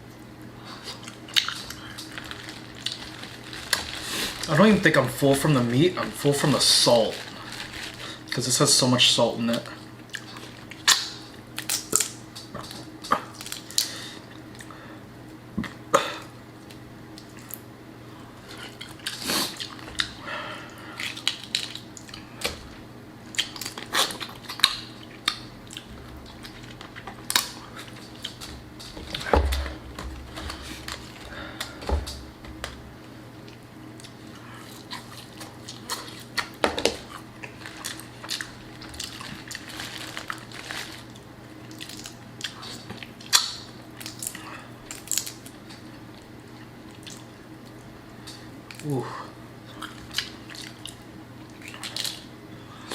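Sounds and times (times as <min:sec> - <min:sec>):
wet squishing and chewing: 0:00.2 - 0:04.6, 0:06.0 - 0:08.5, 0:09.5 - 0:14.7, 0:16.6 - 0:17.7, 0:18.4 - 0:32.8, 0:33.4 - 0:49.0, 0:49.7 - 0:52.9
shells cracking and peeling: 0:01.1 - 0:04.5, 0:35.0 - 0:45.8.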